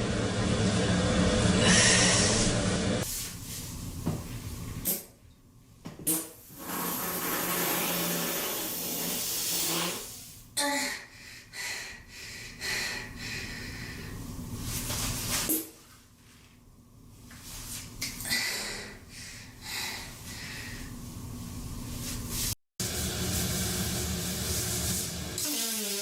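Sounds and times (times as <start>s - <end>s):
human farts: 6.0s - 10.2s.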